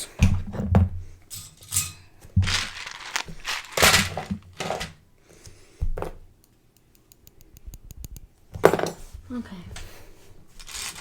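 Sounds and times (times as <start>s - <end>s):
plastic pieces rustling and knocking: 1.3s - 5.0s, 10.5s - 11.0s.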